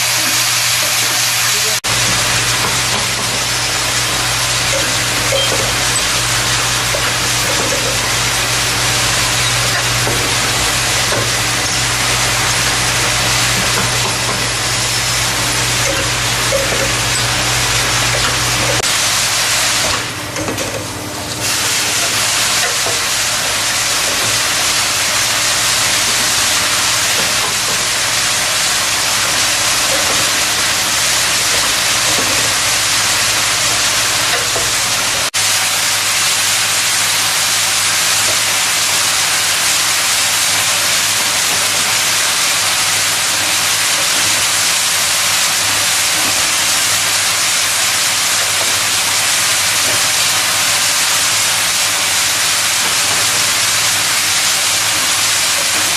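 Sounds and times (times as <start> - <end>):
machine hissing: 0.0 - 55.9.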